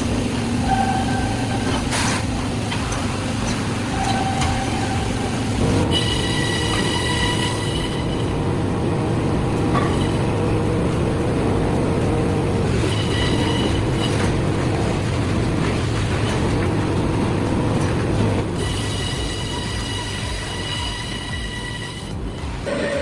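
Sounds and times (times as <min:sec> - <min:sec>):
heavy vehicle rumbling: 0:00.0 - 0:23.0
thin high squeal: 0:03.9 - 0:08.3, 0:12.8 - 0:14.3.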